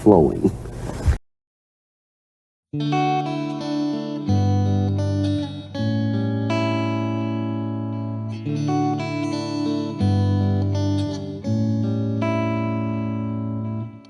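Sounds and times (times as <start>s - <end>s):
plucked guitar chords: 2.8s - 14.0s.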